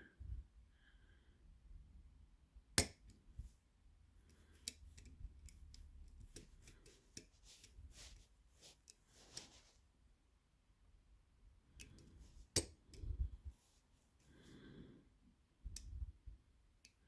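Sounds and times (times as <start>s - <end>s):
lock pick metallic clicks and scrapes: 4.3s - 7.8s.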